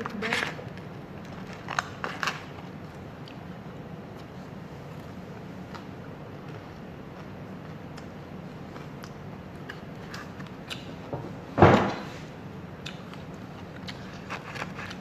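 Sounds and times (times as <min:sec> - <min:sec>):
loud knock: 0:11.2 - 0:12.1.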